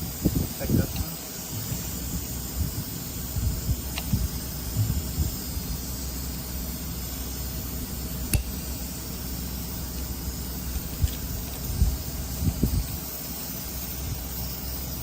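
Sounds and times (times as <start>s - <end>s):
steady hiss and hum: 0.0s - 15.0s
sharp valve click: 8.3s - 8.8s.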